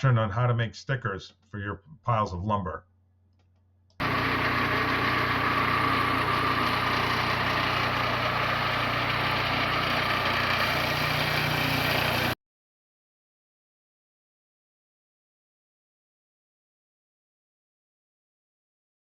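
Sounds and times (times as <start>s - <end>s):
sawmill engine running: 4.0s - 12.4s.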